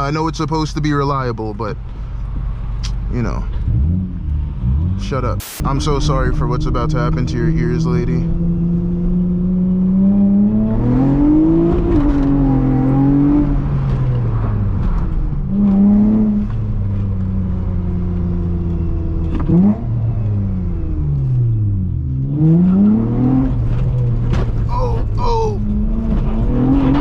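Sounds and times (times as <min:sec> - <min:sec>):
car engine revving hard: 0:03.7 - 0:14.4, 0:22.2 - 0:24.0, 0:25.6 - 0:27.0.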